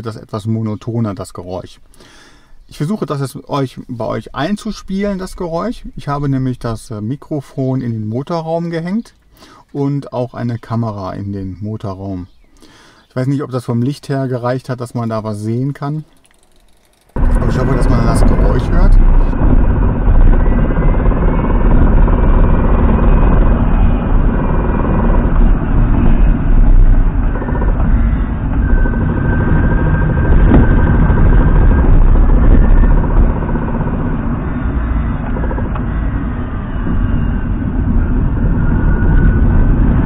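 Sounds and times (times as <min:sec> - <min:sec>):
faint high whine: 0:13.0 - 0:40.0
low rumble of electric drivetrain: 0:14.8 - 0:40.0.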